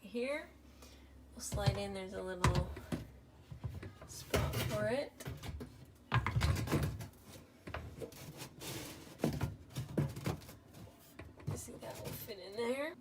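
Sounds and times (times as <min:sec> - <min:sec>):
plastic parts knocking and clicking: 0:02.4 - 0:08.2, 0:09.0 - 0:12.3
plastic scraping rub: 0:06.5 - 0:12.6.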